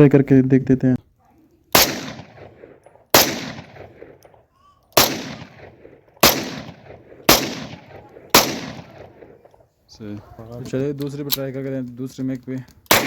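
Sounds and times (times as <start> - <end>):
pistol shots: 1.7 - 9.6.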